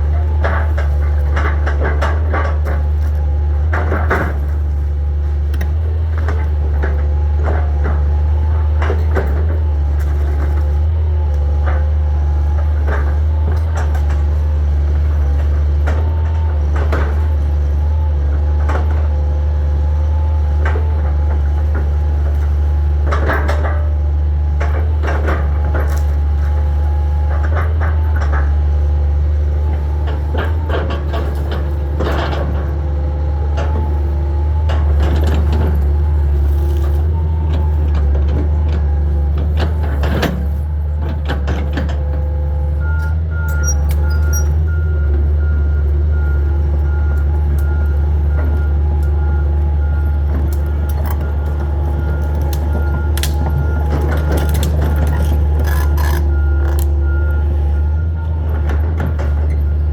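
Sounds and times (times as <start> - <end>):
excavator diesel engine running: 0.0 - 59.9
beeping alarm: 42.8 - 58.5.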